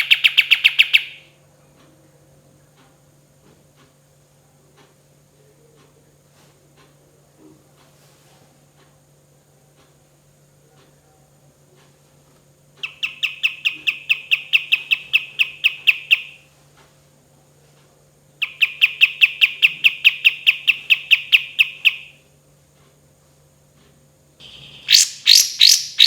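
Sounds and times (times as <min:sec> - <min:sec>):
songbird calling in rapid rolls: 0:00.0 - 0:01.3, 0:12.8 - 0:16.4, 0:18.4 - 0:22.2, 0:24.4 - 0:26.0.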